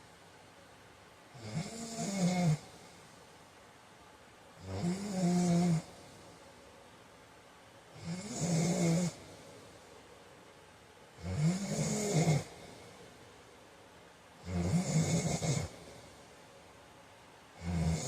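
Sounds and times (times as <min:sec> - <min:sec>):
man snoring: 0:01.4 - 0:02.7, 0:04.6 - 0:05.9, 0:08.0 - 0:09.2, 0:11.2 - 0:12.7, 0:14.4 - 0:15.8, 0:17.6 - 0:18.0.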